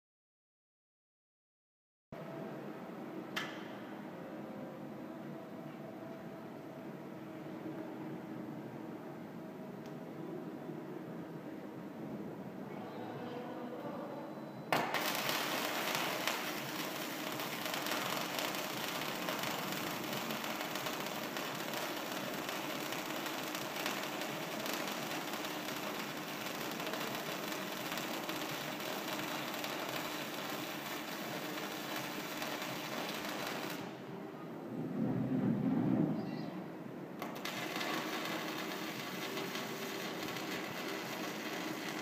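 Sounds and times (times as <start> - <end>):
welding arc crackling: 14.7 - 34.1, 37.2 - 42.0.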